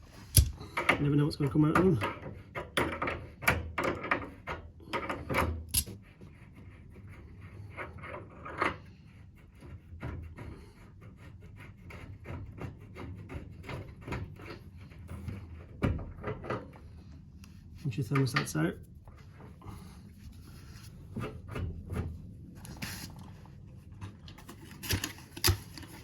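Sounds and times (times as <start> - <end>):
tools clicking on brass fittings: 0.2 - 1.0, 2.8 - 6.0.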